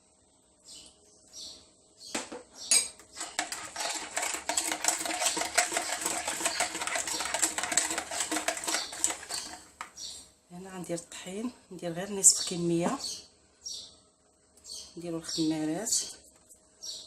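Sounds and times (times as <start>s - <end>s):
utensil scraping a bowl: 2.8s - 10.0s.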